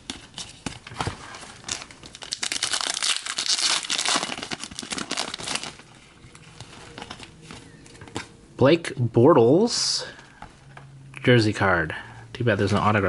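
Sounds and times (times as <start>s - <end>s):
foil wrapper crinkling: 1.3s - 7.4s.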